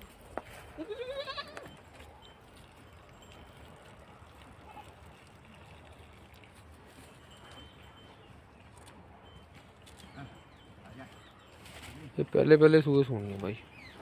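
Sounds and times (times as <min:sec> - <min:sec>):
goat bleating: 0:00.8 - 0:01.7.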